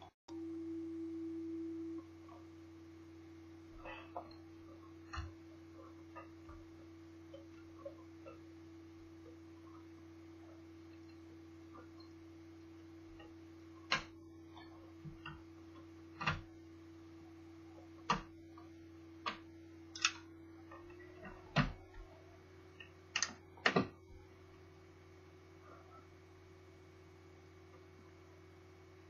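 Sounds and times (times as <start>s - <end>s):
steady hum: 0.0s - 29.0s
plastic parts and tools clicking: 19.2s - 22.0s.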